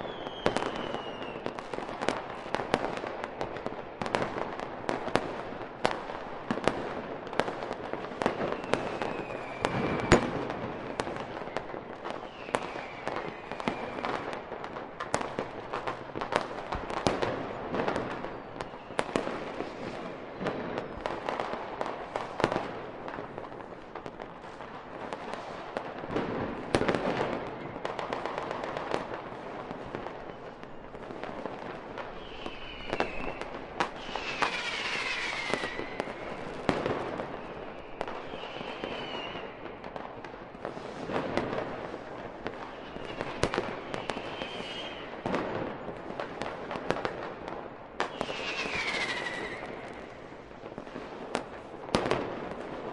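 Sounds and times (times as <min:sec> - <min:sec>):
fireworks whistling: 0:00.0 - 0:04.3, 0:08.1 - 0:14.5, 0:15.1 - 0:22.8, 0:29.9 - 0:40.0, 0:40.6 - 0:46.2, 0:48.0 - 0:52.2
fireworks banging and crackling: 0:00.0 - 0:52.9.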